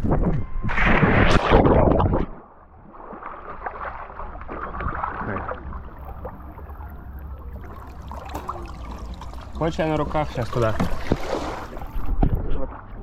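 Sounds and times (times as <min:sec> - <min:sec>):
person jumping into pool splash: 0:00.7 - 0:05.4, 0:10.8 - 0:12.2
water sloshing and lapping: 0:01.9 - 0:13.0.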